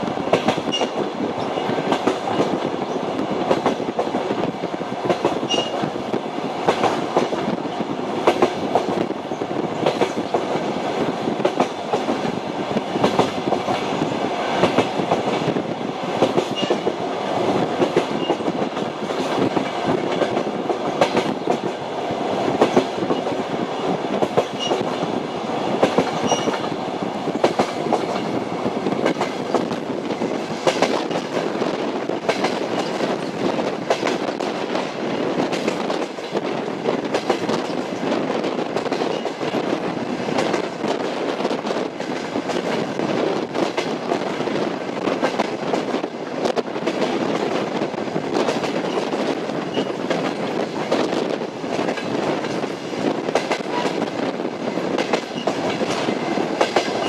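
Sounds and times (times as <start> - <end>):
train running rumble: 0.0 - 57.0
train wheels clattering: 0.0 - 57.0.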